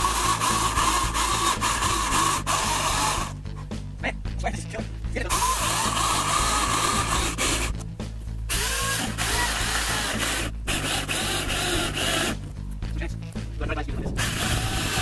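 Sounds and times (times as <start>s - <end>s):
electric chainsaw cutting log: 0.0s - 3.4s, 5.3s - 7.9s, 8.5s - 12.4s, 14.1s - 15.0s.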